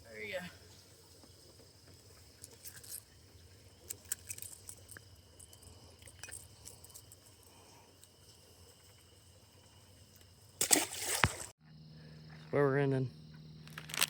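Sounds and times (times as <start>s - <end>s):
crickets trilling: 0.0s - 14.0s
small clicks and rattles: 1.9s - 3.1s, 3.8s - 8.2s.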